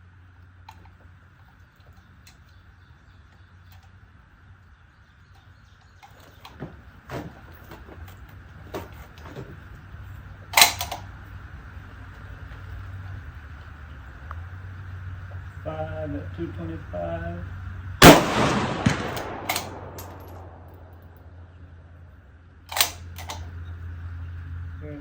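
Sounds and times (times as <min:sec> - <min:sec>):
rifle handling clicks and knocks: 0:10.5 - 0:11.1, 0:18.0 - 0:21.3, 0:22.7 - 0:23.5
rifle shot: 0:18.0 - 0:21.4.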